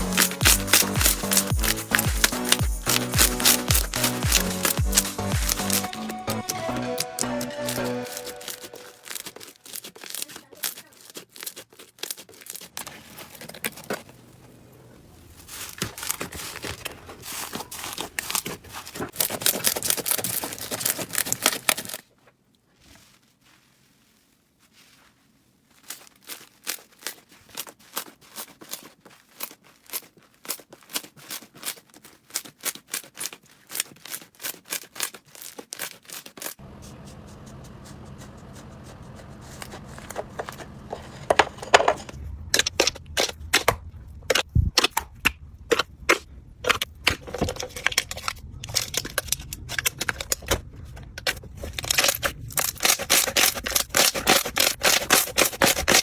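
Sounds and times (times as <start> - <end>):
slime squished by hand: 0.0 - 6.4.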